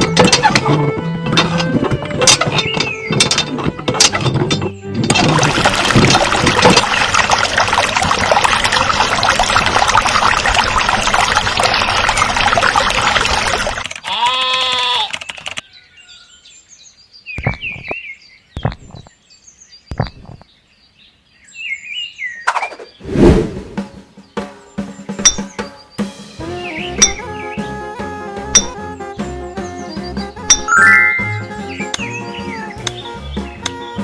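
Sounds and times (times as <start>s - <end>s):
loud rushing water: 5.2s - 13.8s
bird chirps: 15.1s - 23.1s, 28.6s - 34.0s.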